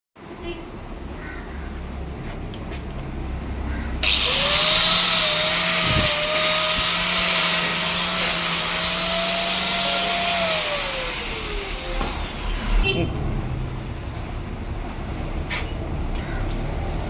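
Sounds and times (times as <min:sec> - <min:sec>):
electric polisher whining: 0:04.0 - 0:12.8.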